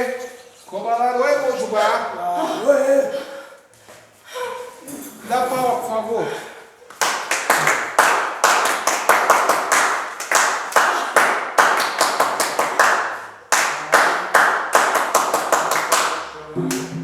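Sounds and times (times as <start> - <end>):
group hand clapping: 6.9 - 17.0.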